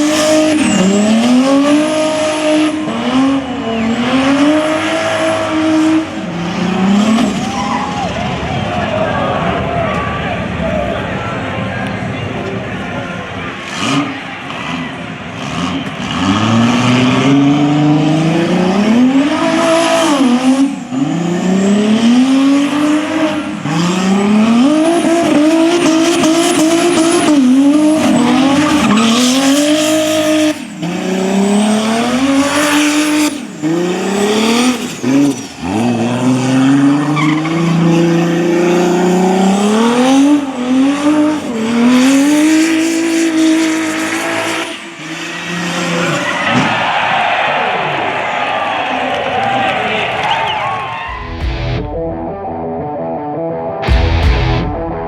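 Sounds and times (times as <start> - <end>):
car engine revving hard: 0.0 - 7.5, 13.6 - 46.3
tyres spinning and squealing: 27.9 - 38.4.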